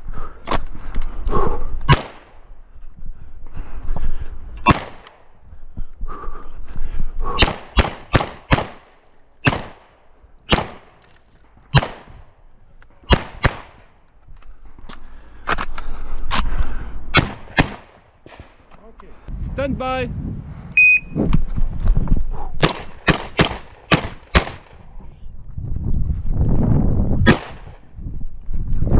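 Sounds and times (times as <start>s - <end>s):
shotgun shots with echo: 1.9s - 2.4s, 4.7s - 5.2s, 7.4s - 11.0s, 11.7s - 12.3s, 13.1s - 13.9s, 17.2s - 18.6s, 22.6s - 24.8s, 27.2s - 27.8s.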